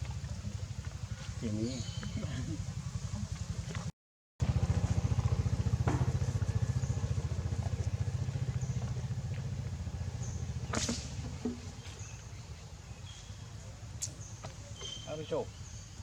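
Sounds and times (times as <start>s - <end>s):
small engine running: 0.0s - 12.1s.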